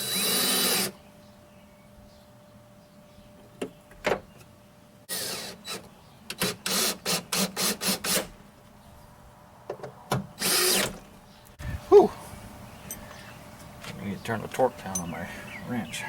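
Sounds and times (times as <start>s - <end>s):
power driver whirring: 0.0s - 1.0s, 10.4s - 11.0s.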